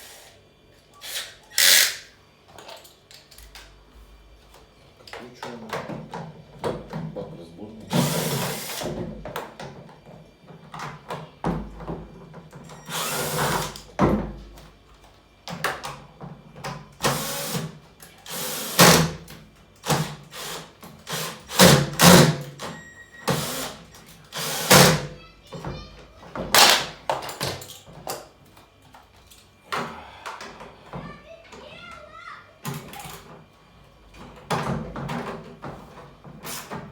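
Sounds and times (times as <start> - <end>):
cordless drill running: 1.0 - 2.0, 7.9 - 9.0, 12.8 - 13.8, 17.0 - 19.2, 19.8 - 22.4, 23.2 - 25.1.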